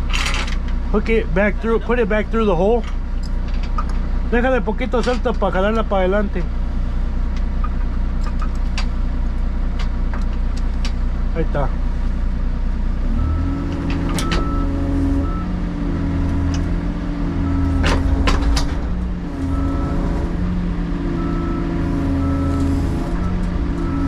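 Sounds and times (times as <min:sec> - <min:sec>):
diesel engine running: 0:00.0 - 0:24.0
short electronic beep: 0:19.5 - 0:20.1.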